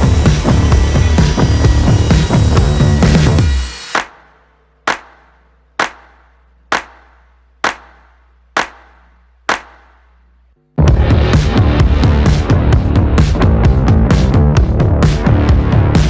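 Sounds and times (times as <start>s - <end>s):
sharp percussive hits: 0.0s - 10.1s.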